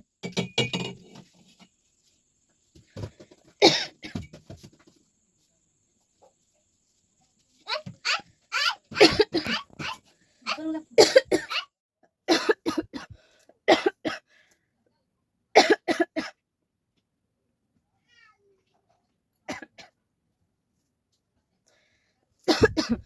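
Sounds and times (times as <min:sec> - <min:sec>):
person coughing: 0:03.6 - 0:04.2, 0:09.0 - 0:09.6, 0:22.5 - 0:23.0.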